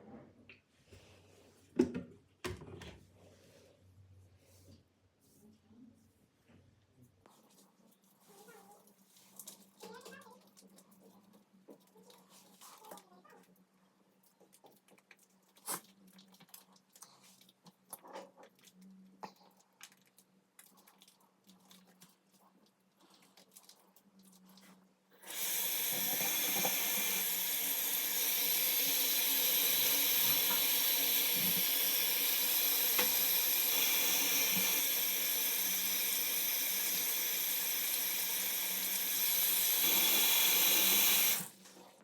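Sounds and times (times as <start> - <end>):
water running from a tap: 25.2 - 41.6.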